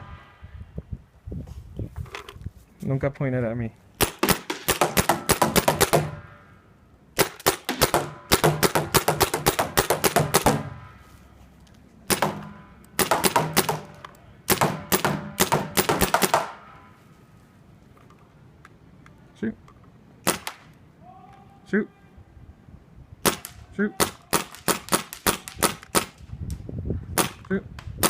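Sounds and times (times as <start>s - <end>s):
paintball gun firing rapidly: 4.0s - 6.2s, 7.2s - 10.8s, 12.1s - 16.6s, 23.3s - 26.2s.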